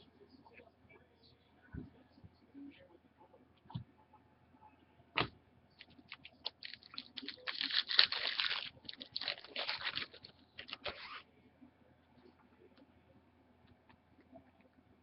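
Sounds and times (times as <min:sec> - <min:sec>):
card wrappers crinkling: 0:05.8 - 0:11.2.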